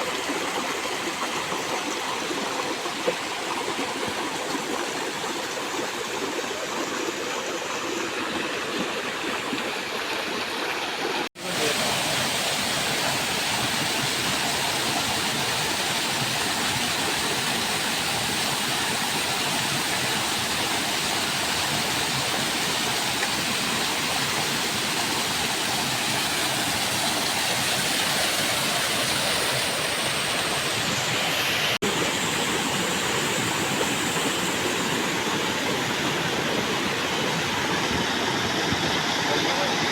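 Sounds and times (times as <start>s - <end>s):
waterfall rushing: 11.4s - 39.9s.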